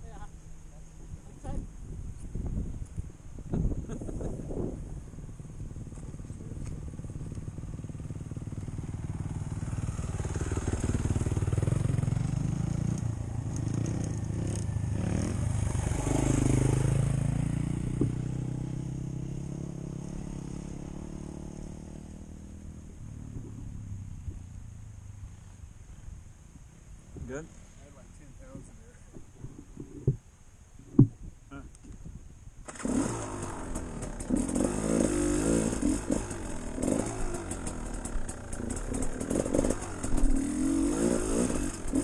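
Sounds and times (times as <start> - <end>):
off-road vehicle engines revving: 3.8 - 24.4, 32.7 - 42.0.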